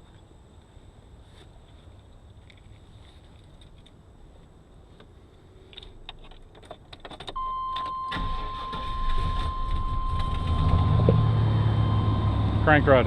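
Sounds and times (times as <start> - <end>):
keys rattling in ignition: 5.8 - 11.0
electronic warning chime: 7.4 - 12.4
car engine starting: 7.4 - 13.0.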